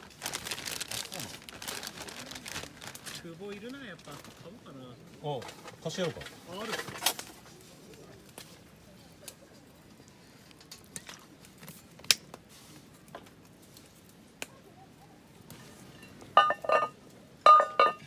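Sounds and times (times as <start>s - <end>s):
dishes clinking together: 15.6s - 18.0s
tableware tapping: 15.9s - 18.0s.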